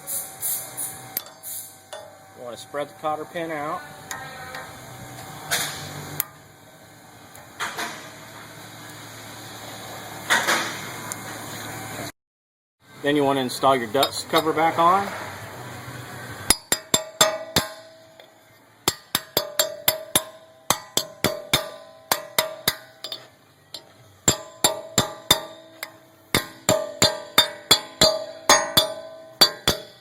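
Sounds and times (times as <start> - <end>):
hammer tapping metal: 1.2 - 2.2, 16.5 - 30.0.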